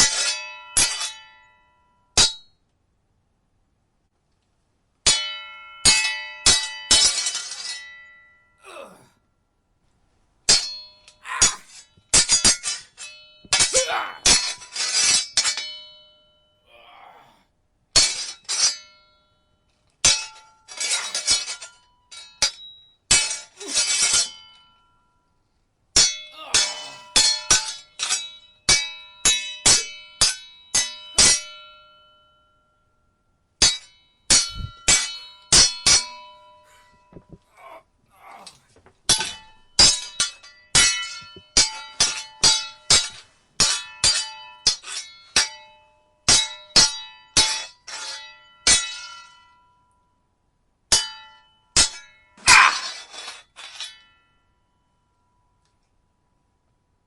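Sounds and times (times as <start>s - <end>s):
sword blades clashing: 13.6s - 14.4s, 26.4s - 27.3s.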